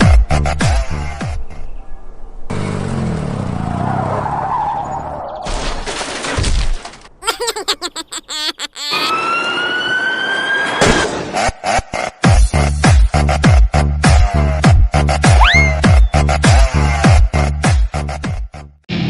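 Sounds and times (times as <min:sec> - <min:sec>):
tyres skidding: 0:02.5 - 0:08.1.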